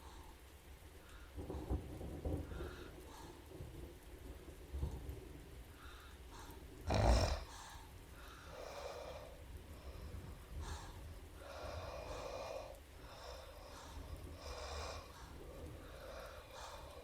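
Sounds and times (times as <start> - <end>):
woman snoring: 6.9 - 7.6.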